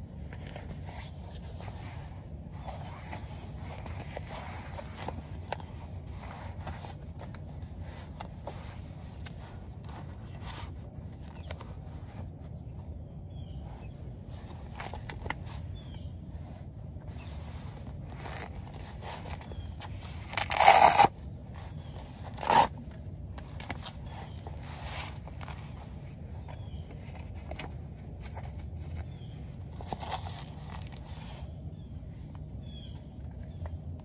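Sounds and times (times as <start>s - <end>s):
steady low hum: 0.0s - 34.0s
zipper being pulled: 17.2s - 22.8s, 29.7s - 31.5s.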